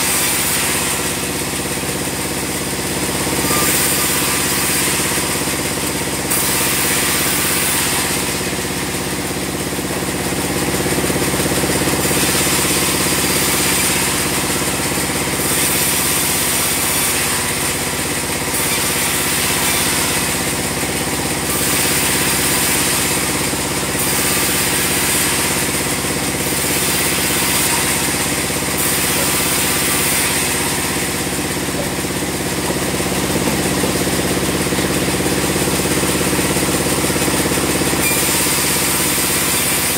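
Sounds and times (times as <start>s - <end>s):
band sawmill drone: 26.4s - 38.0s.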